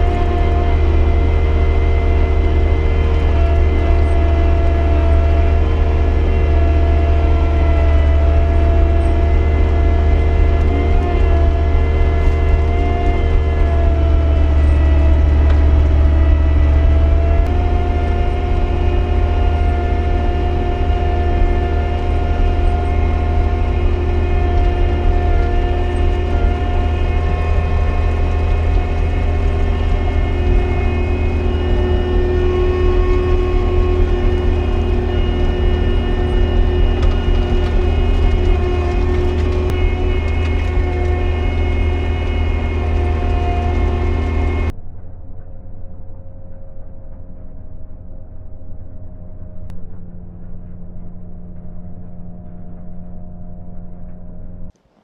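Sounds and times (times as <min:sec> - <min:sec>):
skid steer engine droning: 0:00.0 - 0:55.0
whining tones: 0:00.0 - 0:55.0.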